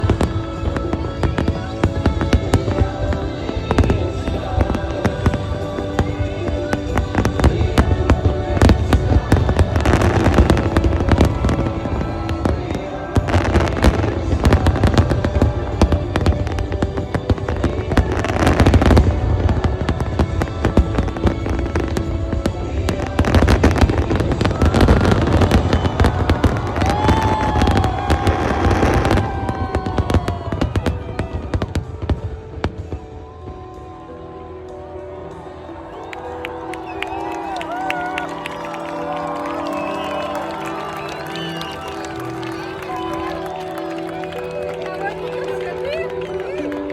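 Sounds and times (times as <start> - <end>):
fireworks bangs and crackling: 0.0 - 34.1
music with sustained tones: 0.0 - 46.9.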